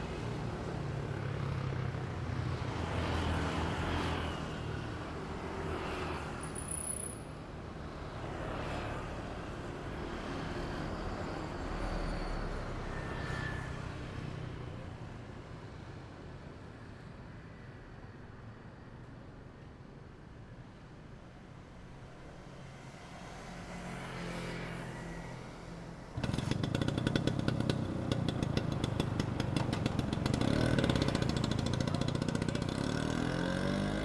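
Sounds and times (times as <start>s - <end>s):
cars and motorbikes passing: 0.0s - 7.1s, 22.8s - 34.0s.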